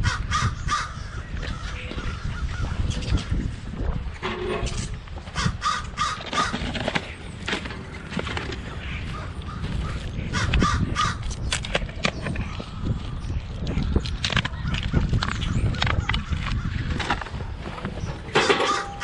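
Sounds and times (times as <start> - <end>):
crows cawing: 0.0 - 2.8, 5.3 - 6.7, 8.8 - 11.4.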